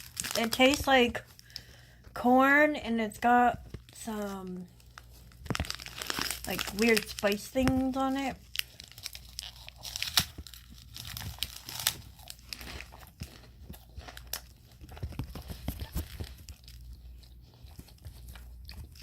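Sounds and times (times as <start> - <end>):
plastic wrapper crinkling: 0.0 - 1.7, 3.6 - 17.0.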